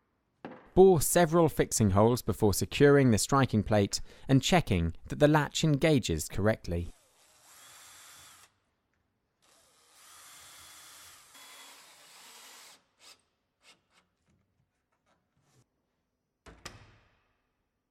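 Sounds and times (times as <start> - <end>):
power drill whining: 9.4 - 12.8.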